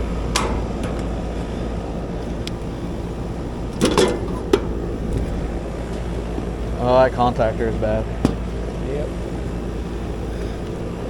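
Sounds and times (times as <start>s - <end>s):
air conditioning unit humming: 0.0s - 11.0s
sharp clicks and knocks: 0.2s - 1.2s, 8.2s - 8.5s.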